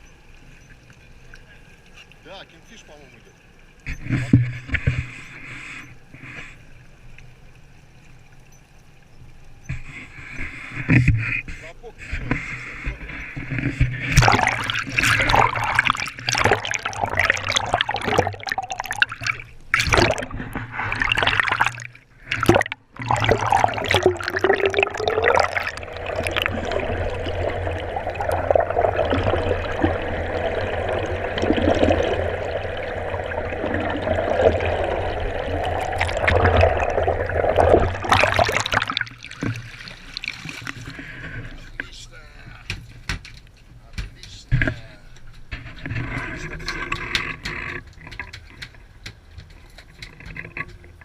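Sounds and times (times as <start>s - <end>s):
sea water splashing: 9.8s - 42.2s
steady low hum: 12.4s - 39.0s.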